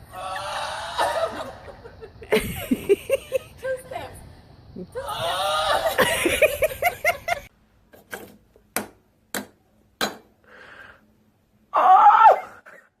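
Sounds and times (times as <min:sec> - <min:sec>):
loud cry: 0:00.0 - 0:01.7, 0:04.9 - 0:06.2, 0:11.7 - 0:12.7.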